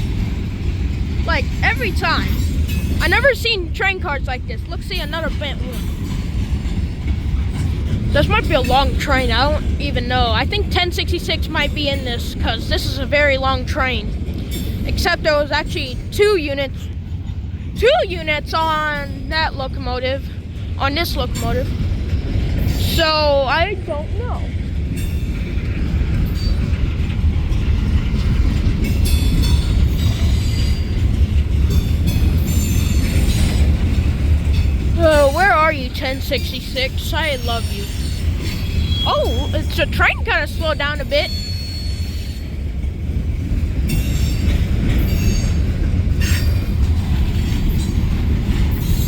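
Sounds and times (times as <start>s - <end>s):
freight train wheels rumbling: 0.0s - 49.0s
metallic wheel squeals: 37.1s - 42.5s.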